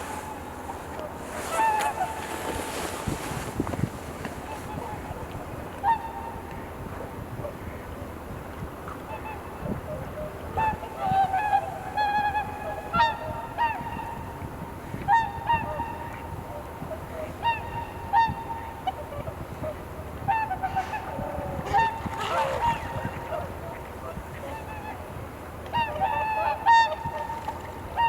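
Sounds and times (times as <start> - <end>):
swans honking: 0.0 - 5.0, 20.3 - 25.0
wind rumble on microphone: 0.0 - 28.0.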